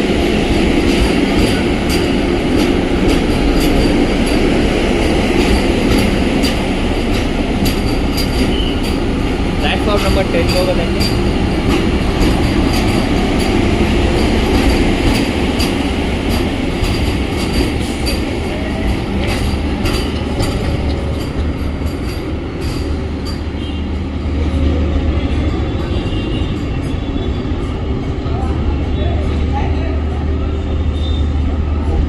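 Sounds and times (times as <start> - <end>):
train wheels rumbling on rails: 0.0 - 32.0.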